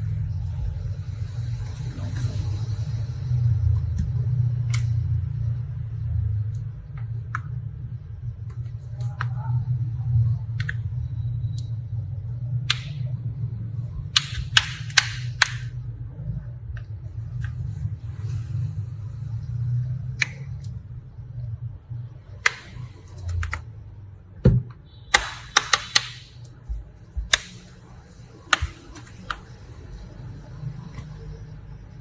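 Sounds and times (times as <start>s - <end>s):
steady low hum: 0.0s - 32.0s
sharp clicks: 12.7s - 13.0s, 14.2s - 15.7s, 22.4s - 23.6s, 25.1s - 26.6s, 27.2s - 27.8s, 28.4s - 29.6s.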